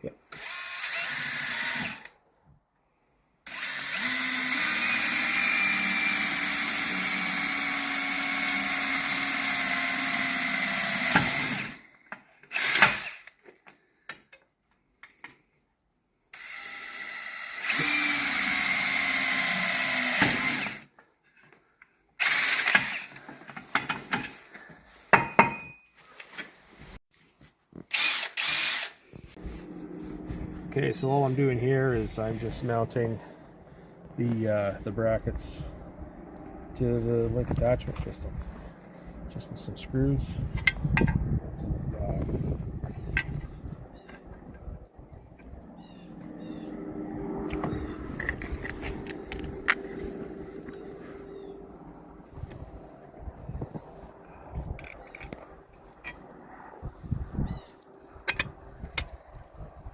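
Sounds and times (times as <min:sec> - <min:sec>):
power drill boring metal: 0:00.3 - 0:02.2, 0:03.5 - 0:11.9, 0:12.5 - 0:13.4, 0:16.3 - 0:20.9, 0:22.2 - 0:23.4, 0:27.9 - 0:29.0.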